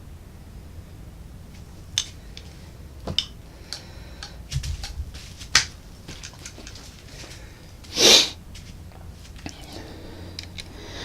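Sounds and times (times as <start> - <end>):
rifle scope clicks and knocks: 2.0 - 7.4, 10.3 - 10.7.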